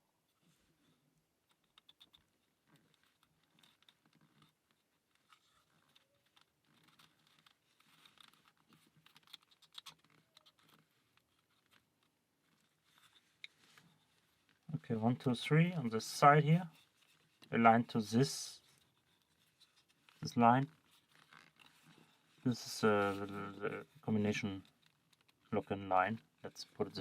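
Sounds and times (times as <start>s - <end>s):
wooden puzzle parts clicking: 1.5s - 12.1s.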